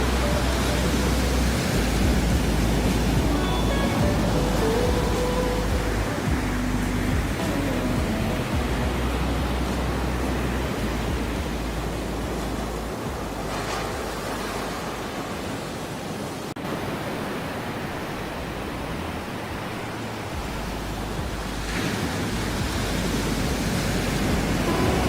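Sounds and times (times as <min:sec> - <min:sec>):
ocean surf washing: 0:00.0 - 0:25.0.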